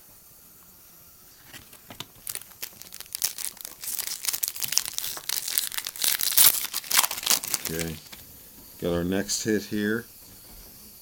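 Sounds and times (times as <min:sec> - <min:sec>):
wrapper tearing and crinkling: 0:01.4 - 0:08.2.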